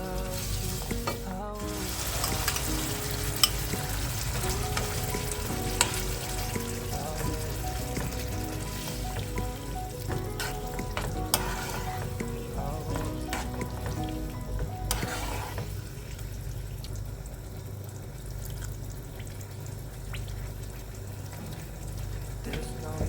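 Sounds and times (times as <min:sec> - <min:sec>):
food sizzling in a frying pan: 0:00.0 - 0:17.9
utensil scraping a pan: 0:07.8 - 0:14.1, 0:14.8 - 0:15.8.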